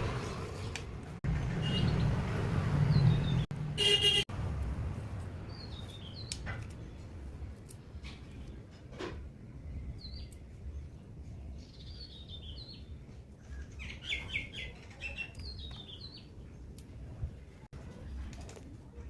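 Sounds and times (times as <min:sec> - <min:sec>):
small birds chirping: 0:02.8 - 0:03.5, 0:05.4 - 0:08.7, 0:09.5 - 0:17.6.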